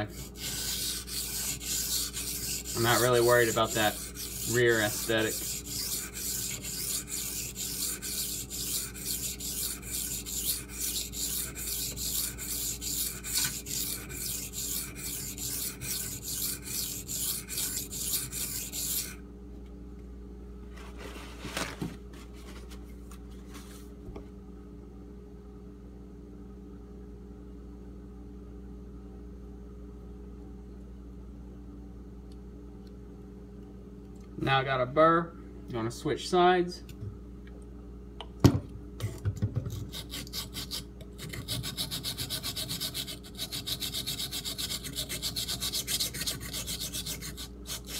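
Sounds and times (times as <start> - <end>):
knife scraping on whetstone: 0.0 - 19.2, 39.7 - 47.9
steady low hum: 0.0 - 47.9.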